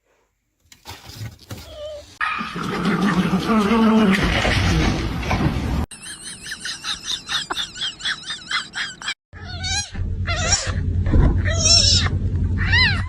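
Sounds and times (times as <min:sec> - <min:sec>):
high-pitched chirping calls: 0:05.9 - 0:10.7.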